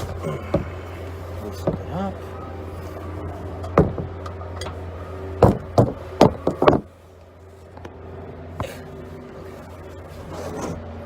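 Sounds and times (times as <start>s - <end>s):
hand tools clanking on car: 0.0s - 2.2s
steady low hum: 0.0s - 11.0s.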